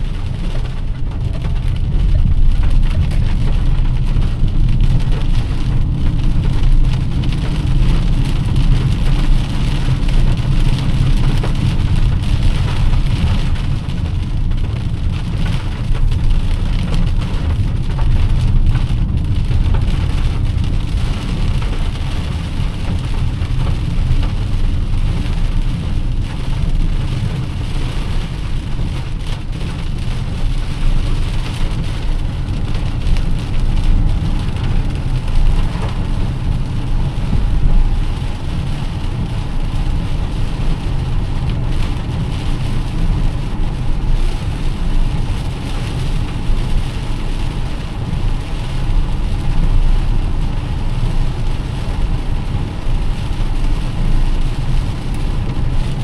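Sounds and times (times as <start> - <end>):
engine and tyre rumble: 0.0 - 56.0
rain pattering on a car: 0.0 - 56.0.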